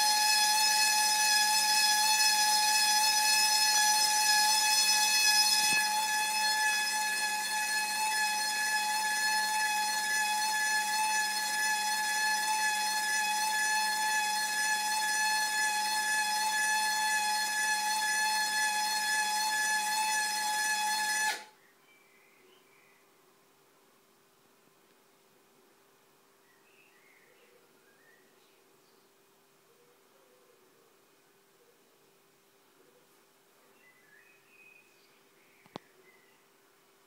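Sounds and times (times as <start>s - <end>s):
house whistling in the breeze: 0.0s - 21.6s.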